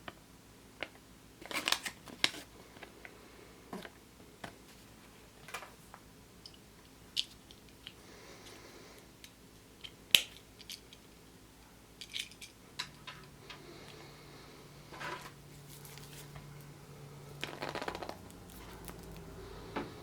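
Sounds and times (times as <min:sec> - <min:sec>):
plastic capsules clicking and crinkling: 0:12.0 - 0:13.3.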